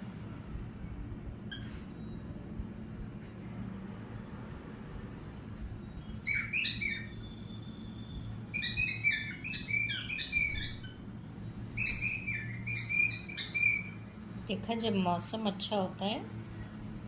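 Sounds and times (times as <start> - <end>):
cockatiel chirping whistles: 6.2 - 11.0, 11.8 - 14.0.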